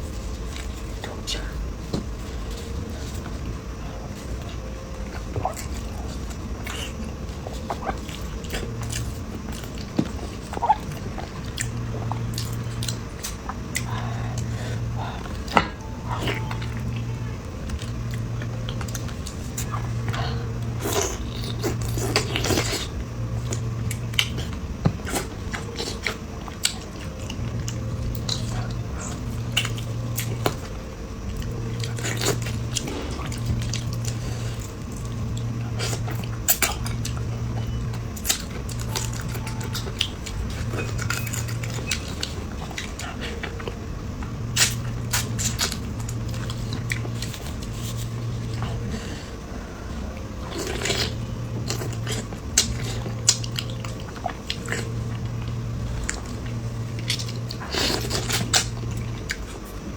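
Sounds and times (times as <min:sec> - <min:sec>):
person chewing and biting: 0:17.7 - 0:49.0, 0:50.4 - 0:59.8.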